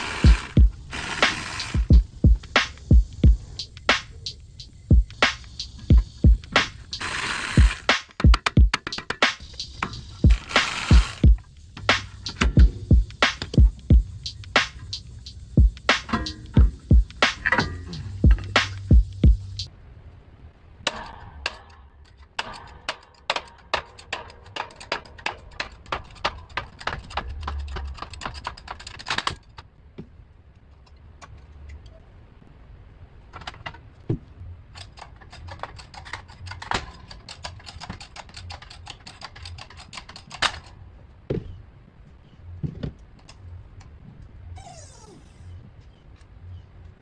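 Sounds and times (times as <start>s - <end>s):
ratchet wrench clicking: 0.0s - 3.0s, 5.1s - 19.2s.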